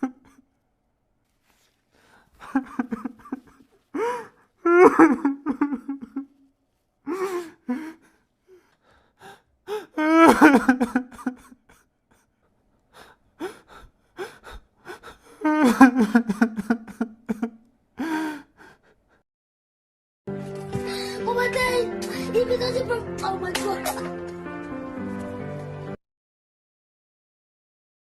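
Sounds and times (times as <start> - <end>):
person sobbing: 2.4 - 6.4, 7.0 - 11.9, 13.0 - 19.2.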